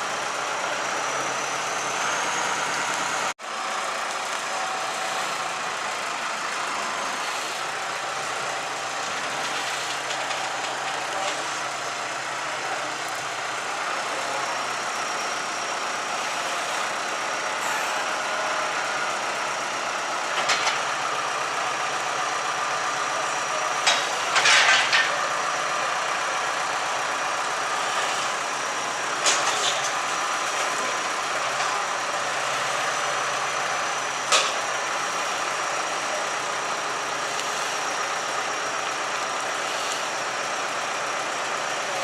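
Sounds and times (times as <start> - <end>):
bonfire roaring: 0.0 - 42.0
fire crackles and pops: 3.7 - 11.9.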